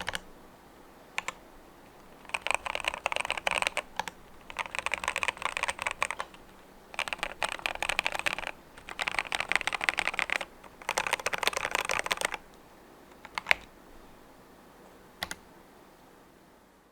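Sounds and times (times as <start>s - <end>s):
mechanical keyboard typing: 0.0s - 0.3s, 1.2s - 12.5s, 13.1s - 13.8s, 15.2s - 15.5s.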